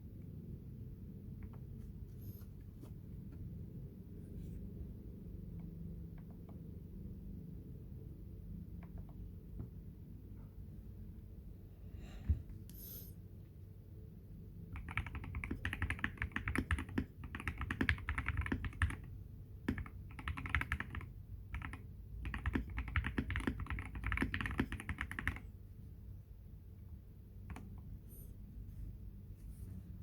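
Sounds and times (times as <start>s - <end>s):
typing on mechanical keyboard: 14.7s - 25.5s.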